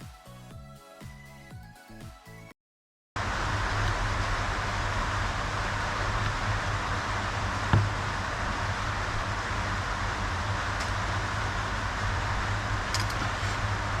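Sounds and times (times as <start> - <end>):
low hum: 3.2 - 14.0
dull thump: 7.7 - 8.0.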